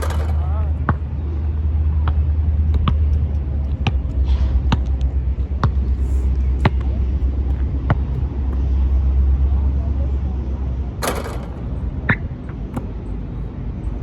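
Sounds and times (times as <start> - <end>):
basketball bouncing on pavement: 0.0 - 1.1, 2.0 - 4.1, 4.7 - 8.9.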